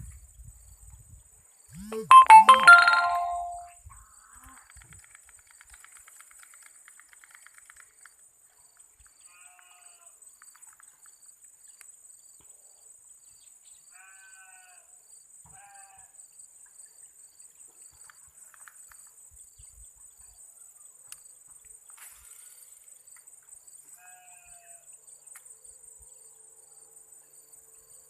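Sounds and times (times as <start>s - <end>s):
bleat-like animal calls: 9.3s - 10.1s, 13.9s - 14.9s, 15.5s - 16.2s, 24.0s - 24.8s.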